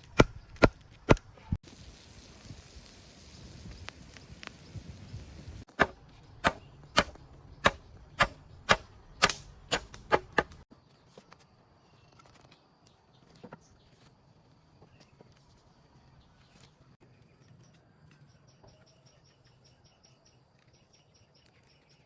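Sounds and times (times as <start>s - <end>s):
sharp chopping strikes: 0.0s - 1.6s, 5.7s - 10.6s.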